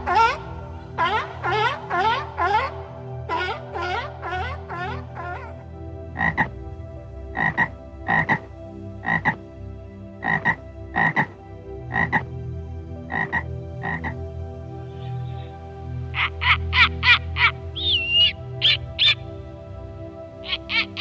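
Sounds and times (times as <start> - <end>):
frog croaking: 6.2 - 6.5, 9.0 - 9.3, 10.2 - 11.3, 11.9 - 12.2, 13.1 - 14.2, 15.0 - 19.3, 20.4 - 21.0.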